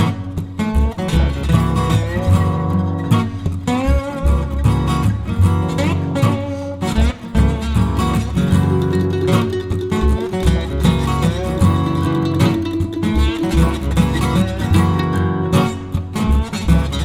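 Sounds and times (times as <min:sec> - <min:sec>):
strummed acoustic guitar: 0:00.0 - 0:17.0
bass line: 0:07.3 - 0:17.0.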